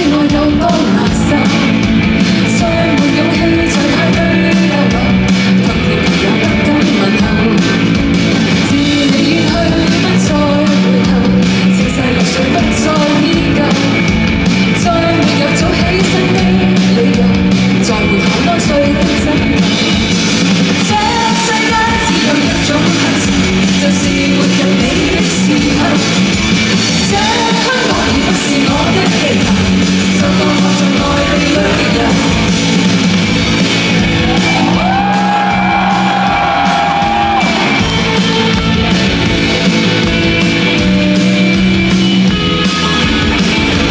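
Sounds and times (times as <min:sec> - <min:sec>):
person singing: 0:00.0 - 0:14.0, 0:14.7 - 0:19.7, 0:20.8 - 0:26.4, 0:27.0 - 0:32.8
live band playing: 0:00.0 - 0:43.9.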